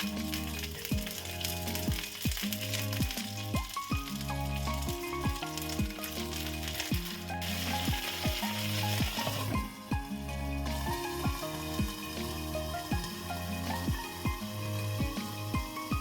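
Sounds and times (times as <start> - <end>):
food sizzling in a frying pan: 0.0 - 16.0
music with deep drum hits: 0.9 - 1.2, 1.9 - 4.1, 7.8 - 16.0.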